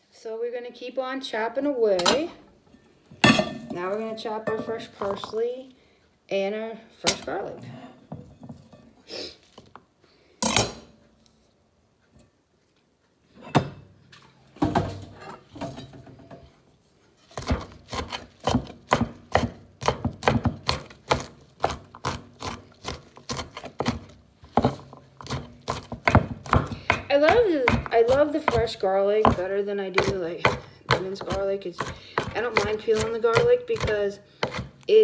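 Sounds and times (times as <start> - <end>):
knife chopping on cutting board: 17.3 - 34.8.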